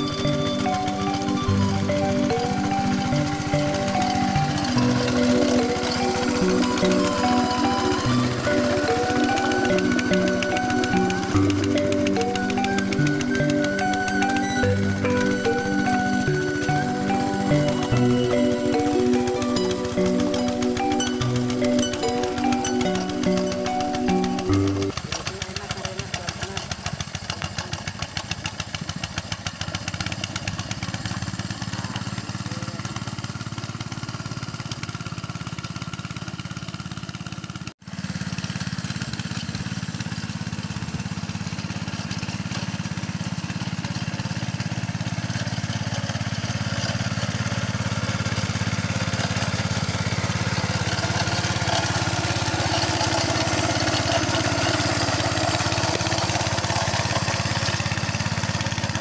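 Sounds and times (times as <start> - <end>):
small tractor engine running: 0.0 - 59.0.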